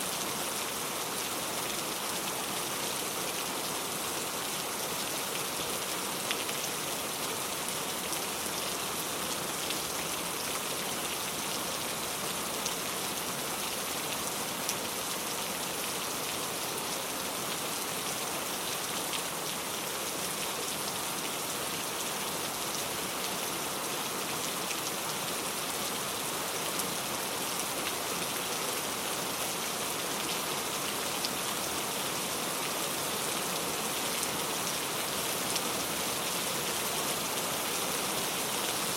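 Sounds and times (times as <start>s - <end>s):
heavy rain falling: 0.1s - 38.9s.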